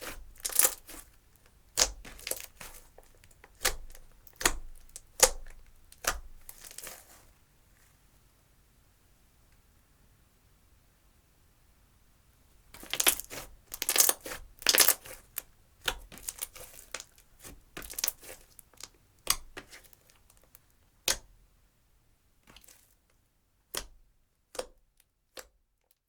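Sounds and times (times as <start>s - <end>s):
sticky slime pops and crackles: 0.0s - 1.1s, 1.7s - 7.0s, 12.8s - 21.3s, 23.7s - 25.6s.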